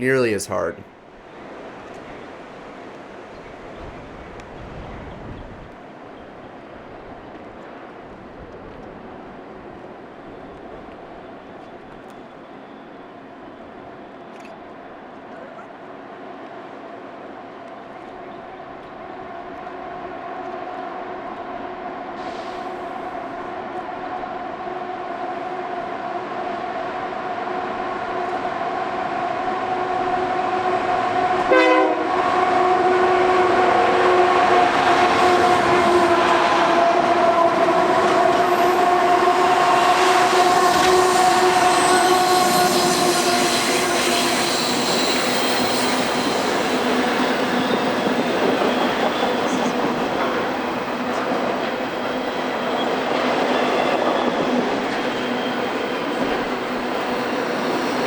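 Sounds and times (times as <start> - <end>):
locomotive horn: 28.0 - 48.7.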